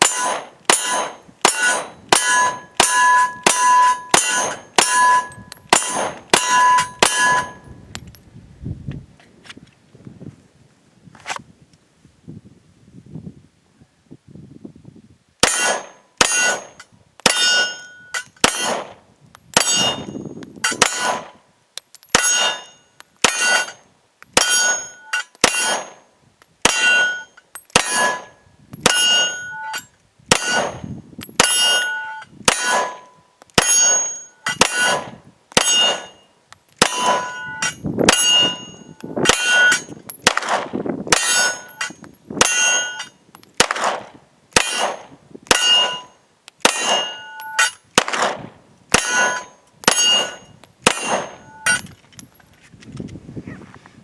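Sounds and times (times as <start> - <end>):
pistol shots: 0.0 - 7.6, 15.4 - 17.8, 18.4 - 19.0, 20.7 - 21.4, 24.4 - 26.0, 26.6 - 29.5, 30.3 - 33.0, 33.6 - 36.2, 36.8 - 51.8
steel target ringing: 0.0 - 7.8, 15.4 - 18.9, 19.6 - 21.2, 22.1 - 23.8, 24.4 - 26.0, 26.6 - 40.3, 41.1 - 43.2, 44.6 - 47.9, 49.0 - 51.9.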